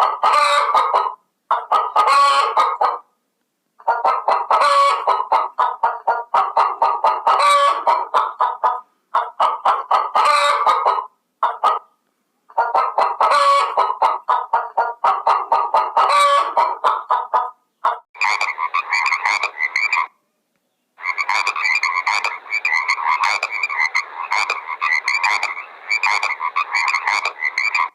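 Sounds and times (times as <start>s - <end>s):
frogs croaking: 18.2s - 20.1s, 21.0s - 27.9s.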